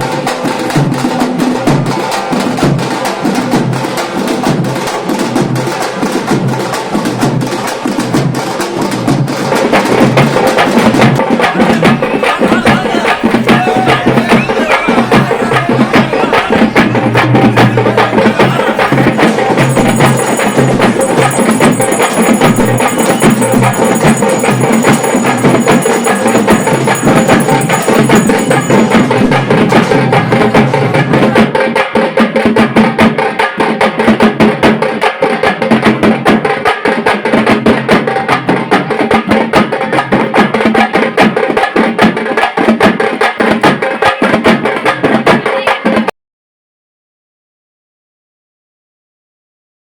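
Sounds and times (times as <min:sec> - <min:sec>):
fast dense drumming: 0:00.0 - 0:46.1
steady high tones: 0:18.2 - 0:29.5.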